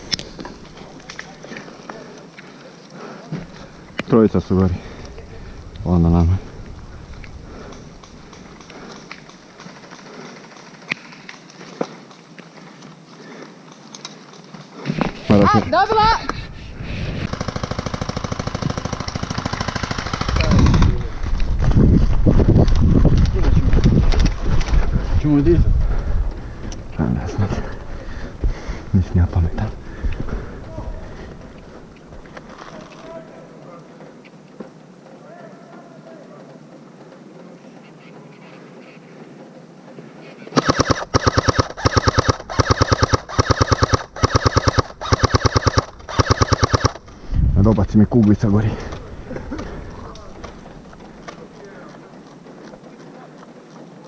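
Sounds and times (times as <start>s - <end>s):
airsoft gun rattling burst: 17.2s - 21.1s, 40.6s - 47.2s.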